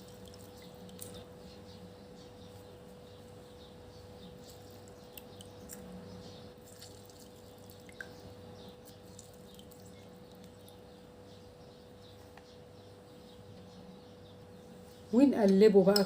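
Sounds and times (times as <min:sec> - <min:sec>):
faint drips: 0:00.0 - 0:01.3, 0:06.6 - 0:10.8.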